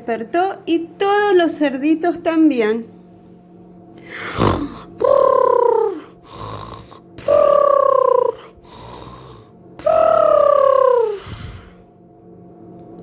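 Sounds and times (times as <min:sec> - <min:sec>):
exaggerated snoring: 0:04.0 - 0:11.8.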